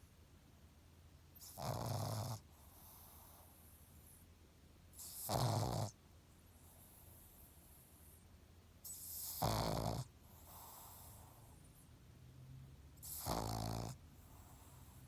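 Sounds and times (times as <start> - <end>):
soft dog breathing: 1.3 - 12.0, 13.0 - 15.0
dog snoring: 1.4 - 4.2, 4.9 - 8.2, 8.8 - 11.8, 13.0 - 15.0.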